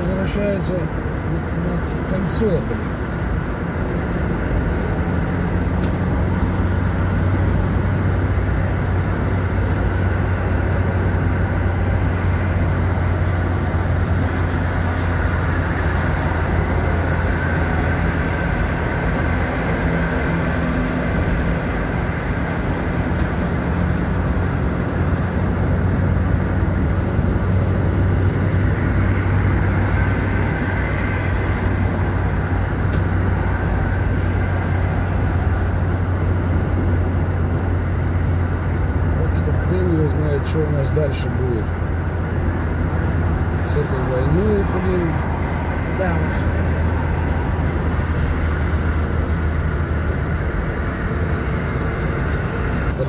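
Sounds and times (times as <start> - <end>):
car engine and tyre noise: 0.0 - 53.0.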